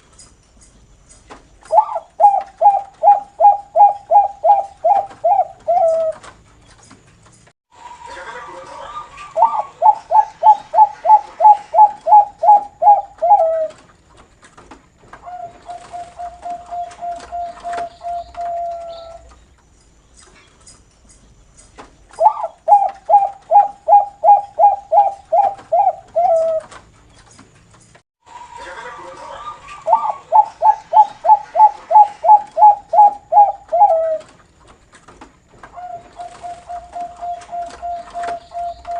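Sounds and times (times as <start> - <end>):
dove cooing: 1.7 - 6.3, 8.9 - 13.8, 15.2 - 19.3, 22.2 - 26.8, 29.2 - 34.4, 35.7 - 38.9.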